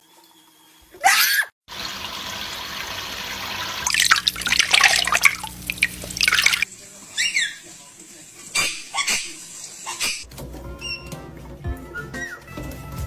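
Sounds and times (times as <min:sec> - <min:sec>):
loud water splashing: 0:01.7 - 0:06.7
shower water running: 0:01.7 - 0:10.2.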